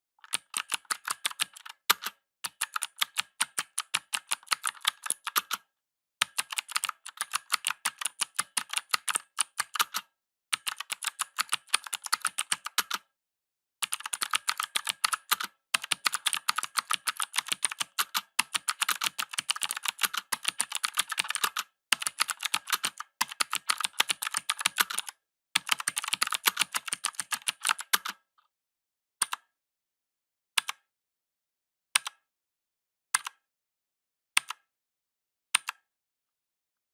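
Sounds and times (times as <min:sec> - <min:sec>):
mechanical keyboard typing: 0:00.2 - 0:05.6, 0:06.2 - 0:13.0, 0:13.8 - 0:28.2.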